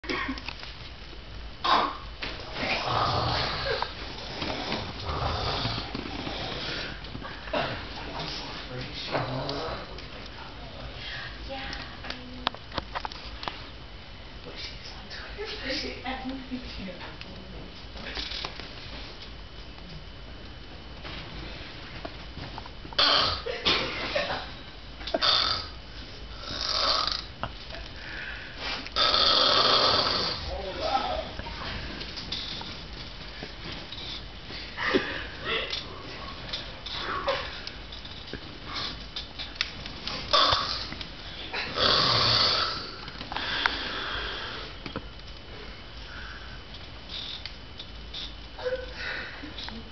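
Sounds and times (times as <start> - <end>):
girl snoring: 2.6 - 7.0, 23.0 - 23.5, 25.2 - 27.3, 29.0 - 30.5, 40.3 - 40.9, 41.5 - 44.8
quiet breathing: 10.8 - 11.7, 27.9 - 30.5, 40.3 - 44.9, 45.5 - 47.4, 48.2 - 49.9.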